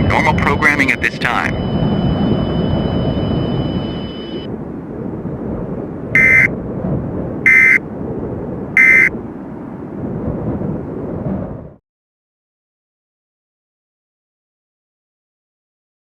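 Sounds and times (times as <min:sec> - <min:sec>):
faint high steady tone: 0:00.0 - 0:04.5, 0:06.2 - 0:06.5, 0:07.5 - 0:07.8, 0:08.8 - 0:09.1
harsh digital data bursts: 0:06.2 - 0:06.5, 0:07.5 - 0:07.8.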